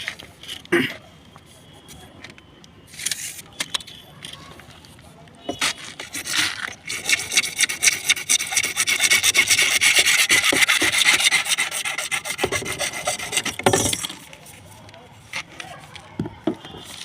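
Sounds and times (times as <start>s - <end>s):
hand tool scraping: 5.5s - 14.4s.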